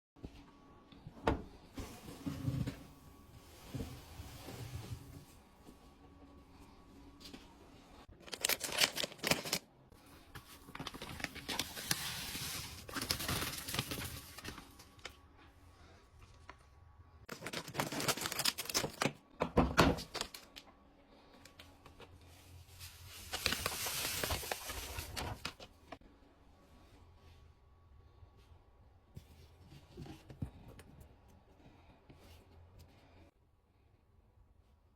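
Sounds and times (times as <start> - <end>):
powder packaging rustling: 8.1 - 9.7, 10.4 - 15.2, 17.3 - 19.1, 22.7 - 25.7.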